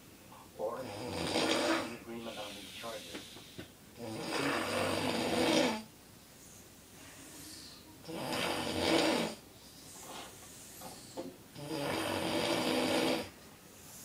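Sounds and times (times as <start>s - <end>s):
man snoring loudly: 0.8s - 2.0s, 4.0s - 5.9s, 8.0s - 9.4s, 11.6s - 13.3s
quiet breathing: 1.9s - 3.8s, 6.2s - 8.0s, 9.4s - 11.4s, 13.7s - 14.0s.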